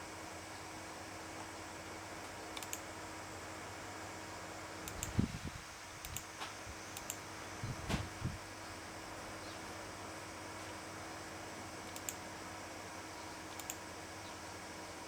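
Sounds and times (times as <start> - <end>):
faint hum: 0.0 - 15.0
room hiss: 0.0 - 15.0
small clicks: 2.6 - 2.8, 4.8 - 5.2, 6.0 - 6.3, 6.9 - 7.2, 11.9 - 12.2, 13.5 - 13.8.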